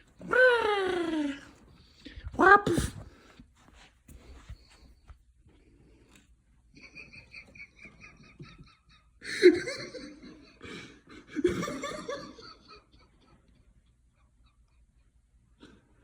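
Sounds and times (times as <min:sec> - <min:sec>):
person laughing: 0:06.8 - 0:13.2.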